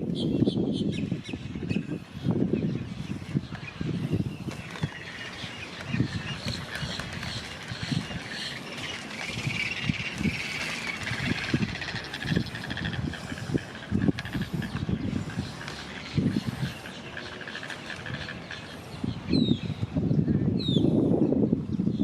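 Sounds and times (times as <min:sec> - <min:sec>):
birds chirping and trilling: 0:00.0 - 0:22.0.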